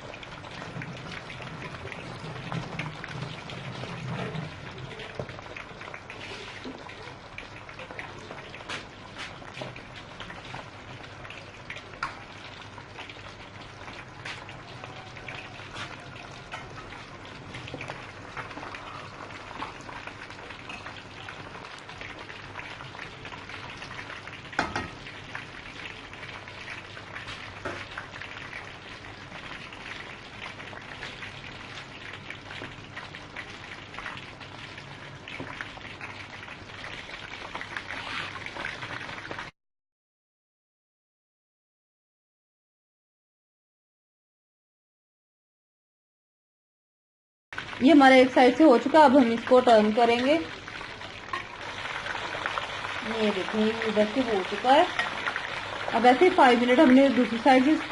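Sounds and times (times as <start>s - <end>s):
chicken sizzling in hot oil: 0.0s - 39.5s, 47.6s - 57.9s
oil popping: 48.9s - 57.9s.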